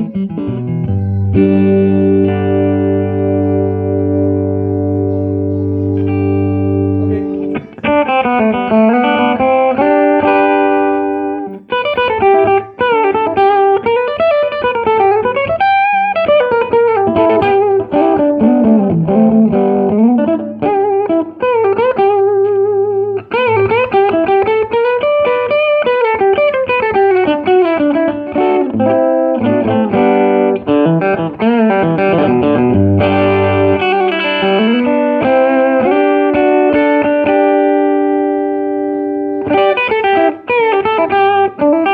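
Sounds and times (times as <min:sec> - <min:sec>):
electric guitar playing: 0:00.0 - 0:41.9.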